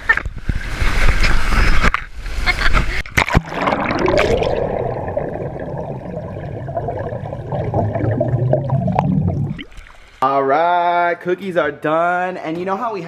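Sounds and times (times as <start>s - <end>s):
pool water churning and sloshing: 2.5s - 10.2s.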